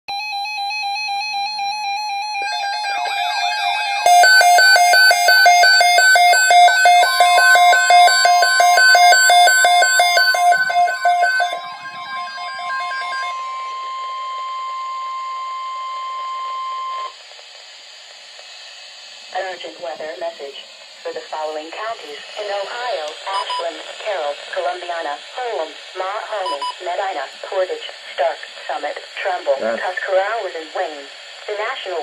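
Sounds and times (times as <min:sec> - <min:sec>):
weather alarm tone: 0:00.1 - 0:17.1
electronic beeping tones: 0:01.1 - 0:17.1
radio hiss: 0:17.1 - 0:32.0.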